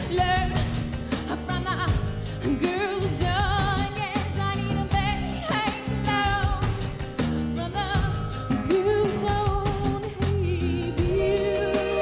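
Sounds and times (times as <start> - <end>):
pop song drums and bass: 0.0 - 12.0
woman singing with vibrato: 7.6 - 12.0.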